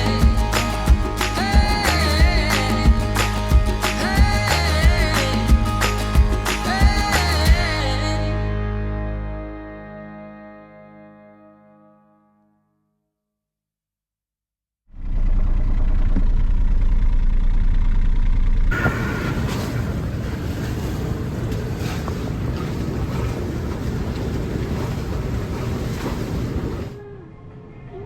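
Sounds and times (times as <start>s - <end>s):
wind rumbling on microphone: 18.7s - 27.0s.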